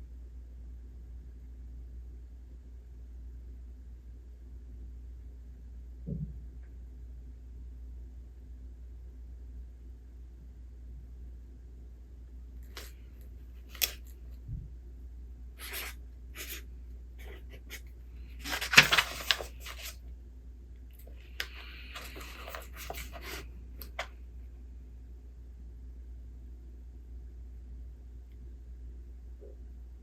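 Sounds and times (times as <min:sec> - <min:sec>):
book pages rustling: 0:12.7 - 0:13.0, 0:13.6 - 0:14.2, 0:17.2 - 0:20.0, 0:21.0 - 0:24.1.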